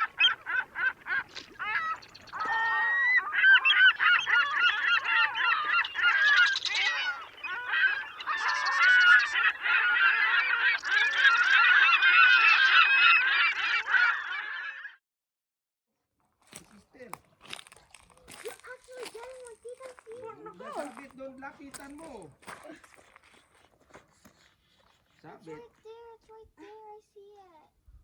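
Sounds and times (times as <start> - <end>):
geese honking: 0.0 - 14.9.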